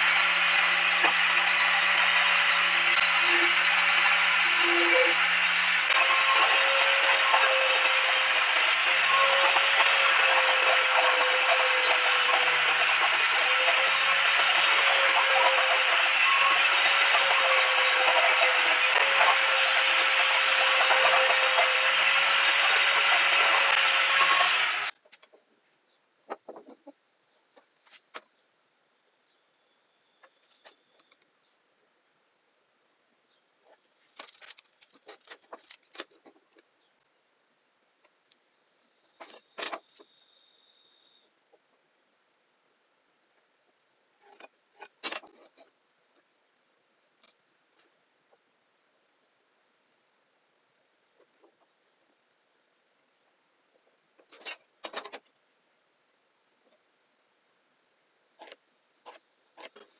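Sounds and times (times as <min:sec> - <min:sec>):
high-pitched drone: 0:00.0 - 0:24.9.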